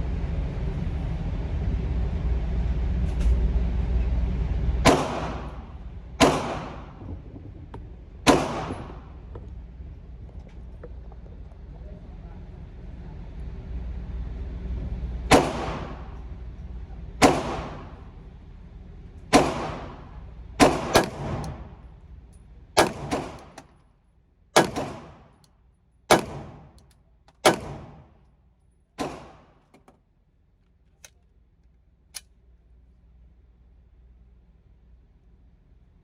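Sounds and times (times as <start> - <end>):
pistol shots: 4.8 - 7.0, 8.2 - 9.3, 15.3 - 16.2, 17.2 - 18.2, 19.3 - 21.8, 22.8 - 23.6, 24.6 - 25.4, 26.1 - 28.1, 29.0 - 29.7.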